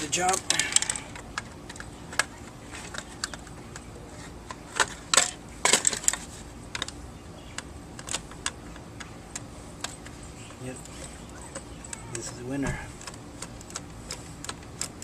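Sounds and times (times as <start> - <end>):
parts knocking together: 0.0 - 7.0.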